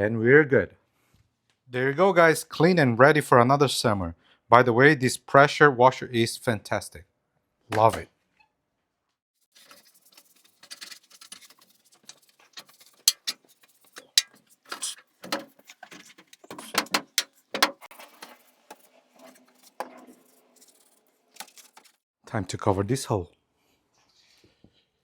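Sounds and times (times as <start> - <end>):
small hard objects clicking and rattling: 9.5 - 18.9.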